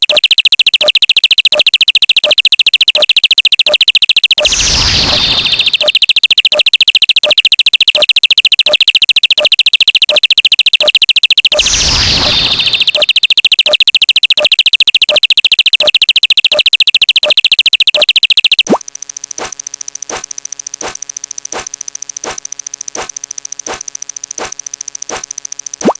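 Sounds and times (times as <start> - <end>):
regular click: 0.0 - 4.5, 5.8 - 11.6, 12.9 - 25.9
harsh pulsing electronic buzz: 4.4 - 5.9, 18.7 - 25.9.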